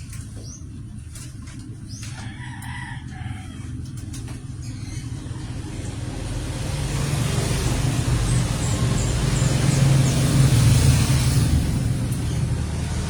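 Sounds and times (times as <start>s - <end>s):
vehicle engine passing: 4.7s - 13.0s.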